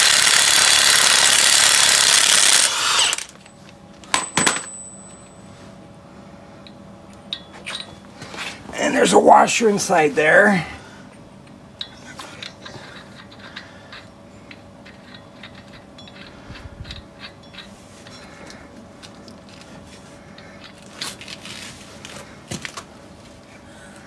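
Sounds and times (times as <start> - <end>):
faint steady hum: 2.6 - 24.0
clinks of hand tools and parts: 3.3 - 5.4, 7.3 - 8.0, 11.8 - 19.7.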